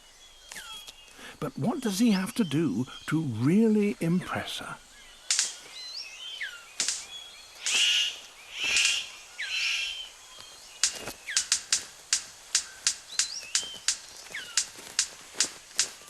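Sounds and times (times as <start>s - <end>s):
bird harsh calls: 0.0s - 16.0s
faint birds whistling: 0.0s - 16.0s
bird rapid sharp clicks: 5.2s - 5.8s, 6.7s - 16.0s.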